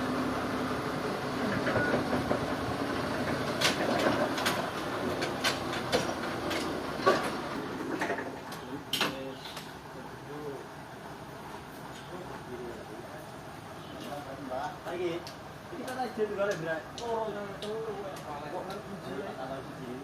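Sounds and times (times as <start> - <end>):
sawmill machinery humming: 0.0 - 8.6
sharp knocks and clanks: 1.4 - 9.7.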